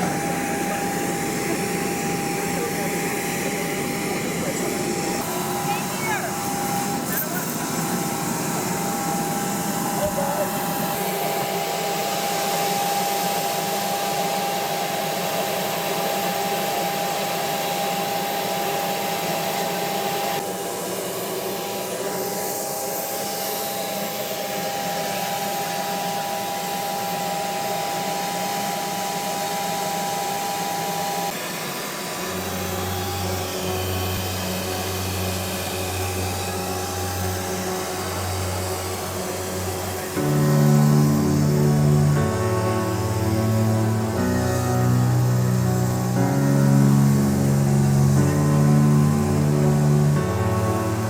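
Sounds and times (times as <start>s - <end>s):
high whine: 0.0s - 51.0s
mechanical drone blowing air: 29.6s - 51.0s.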